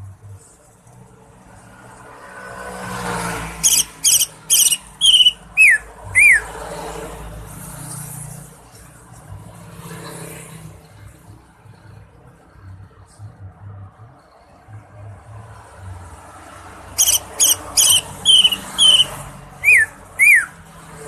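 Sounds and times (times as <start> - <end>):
bird whistling sharp notes: 3.6 - 6.5, 17.0 - 20.6.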